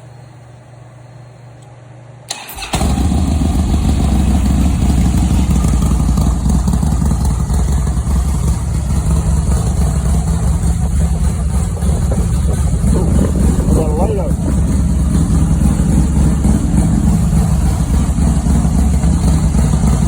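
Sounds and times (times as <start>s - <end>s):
motorcycle starter click and crank: 2.3s - 3.1s
motorcycle engine idling loudly: 2.8s - 20.0s.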